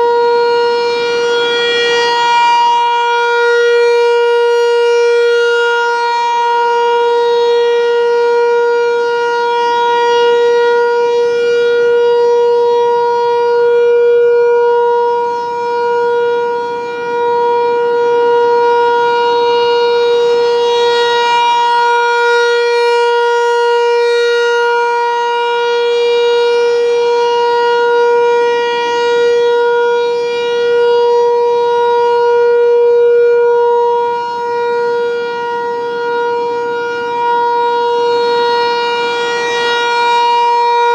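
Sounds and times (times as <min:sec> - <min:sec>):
rotating warning siren: 0:00.0 - 0:40.9.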